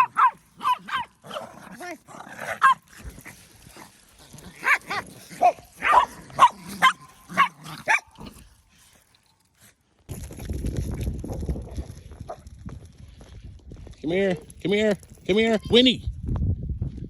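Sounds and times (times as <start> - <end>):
dogs yipping: 0.0 - 1.5, 2.5 - 3.2, 4.6 - 8.3.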